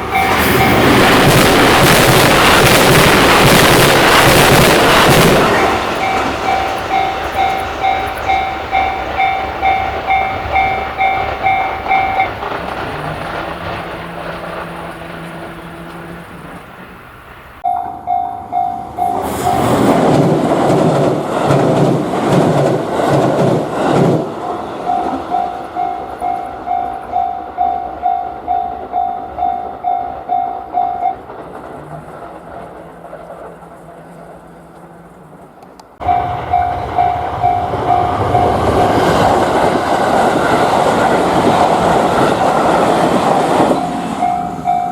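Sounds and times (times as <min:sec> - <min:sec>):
train wheels clacking on rail joints: 0:00.0 - 0:16.8, 0:17.6 - 0:44.9
level crossing bell ringing: 0:05.4 - 0:12.4, 0:17.6 - 0:19.7, 0:24.5 - 0:31.2, 0:36.0 - 0:38.8, 0:43.8 - 0:44.9.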